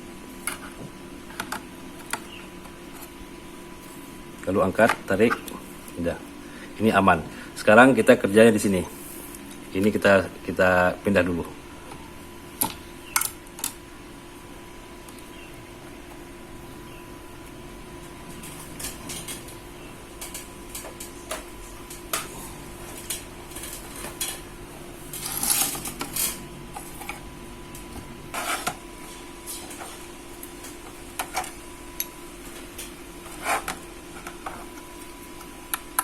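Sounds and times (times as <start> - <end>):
tools and parts clattering: 25.1 - 27.2.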